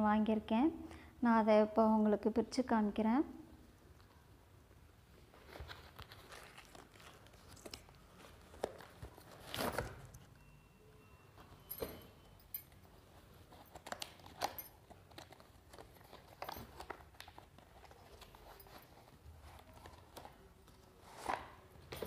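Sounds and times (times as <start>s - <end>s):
packaging crinkling: 5.3s - 10.3s, 13.2s - 21.2s.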